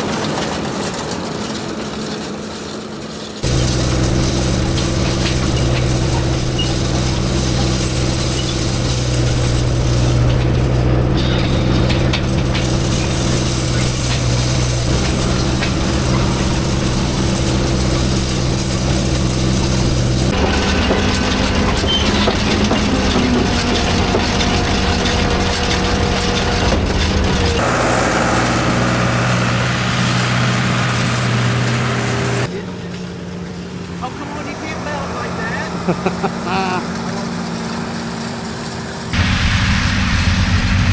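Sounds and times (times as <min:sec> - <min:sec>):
tractor diesel engine droning: 0:27.6 - 0:39.4.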